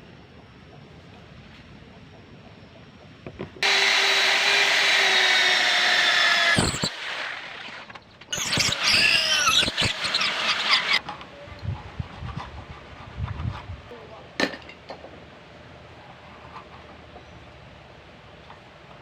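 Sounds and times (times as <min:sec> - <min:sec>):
power tool running: 0:03.6 - 0:11.0
tool squealing against metal: 0:06.1 - 0:07.0, 0:07.7 - 0:11.0.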